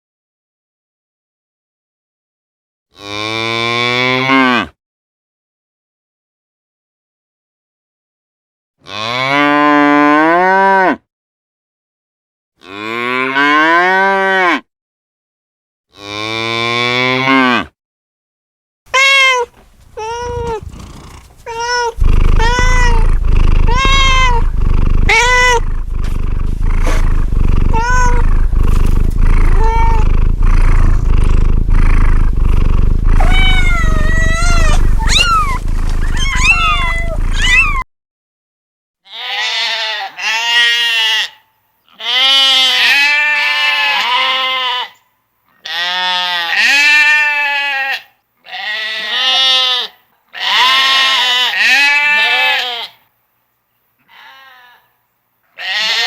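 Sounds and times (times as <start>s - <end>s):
cat meowing: 18.9s - 37.8s
cow mooing: 19.6s - 37.8s.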